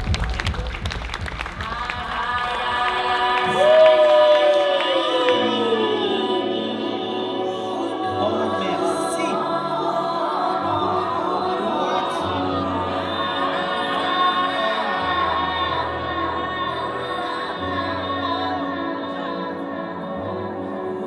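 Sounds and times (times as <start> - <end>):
music with choir-like voices: 0.0 - 21.0.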